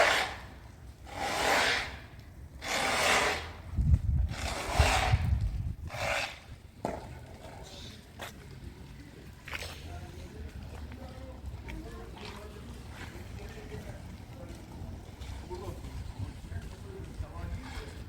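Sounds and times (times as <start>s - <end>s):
rasping strokes on wood: 0.0s - 0.5s, 1.1s - 2.0s, 2.6s - 3.6s, 4.3s - 5.3s, 5.9s - 6.5s.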